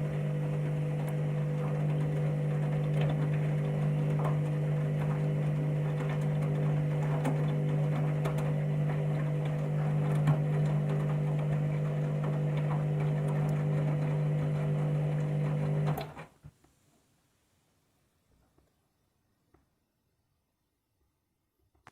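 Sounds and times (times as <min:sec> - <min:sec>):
washing machine motor hum: 0:00.0 - 0:16.4.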